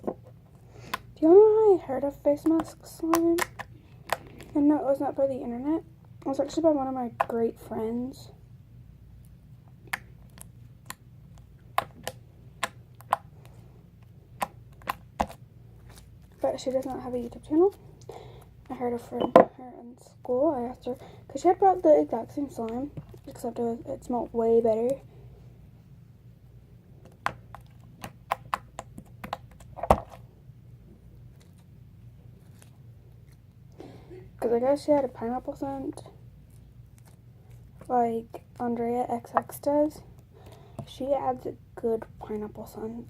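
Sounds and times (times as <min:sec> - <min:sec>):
sticky slime clicking and popping: 0:02.5 - 0:04.2.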